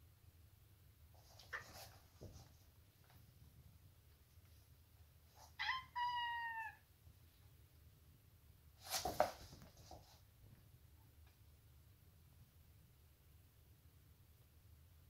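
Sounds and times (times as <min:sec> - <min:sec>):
cat meowing: 0:05.4 - 0:06.8.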